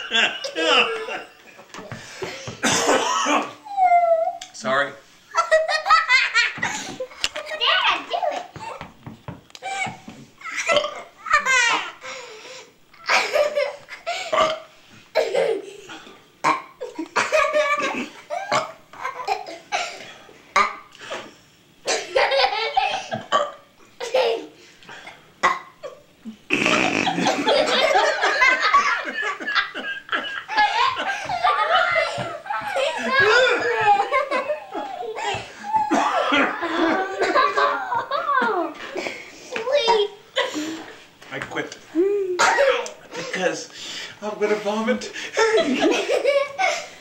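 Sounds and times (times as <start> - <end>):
laughter: 0.0 - 1.3, 5.3 - 6.7, 21.9 - 23.3, 26.6 - 39.2, 45.3 - 46.9.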